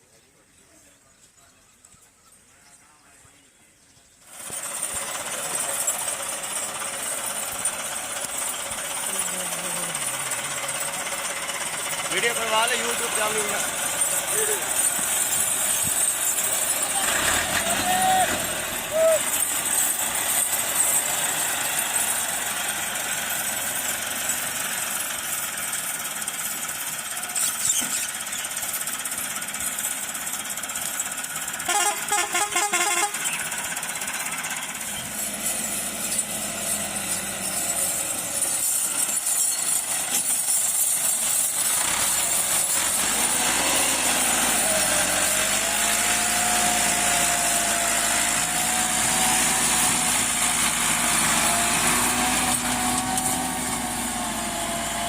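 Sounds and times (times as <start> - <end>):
farm machinery engine running: 4.2 - 55.0
rapid rattling: 4.3 - 46.4.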